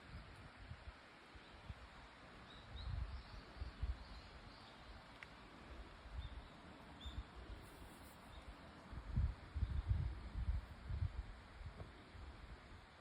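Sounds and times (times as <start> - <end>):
faint bird chirps: 6.1 - 8.6
low rumbling wind gusts: 8.6 - 13.0.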